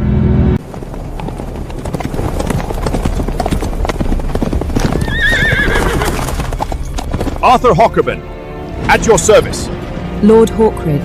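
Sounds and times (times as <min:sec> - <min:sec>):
horse hooves clattering: 0:00.6 - 0:08.2
horse whinnying: 0:04.8 - 0:06.7.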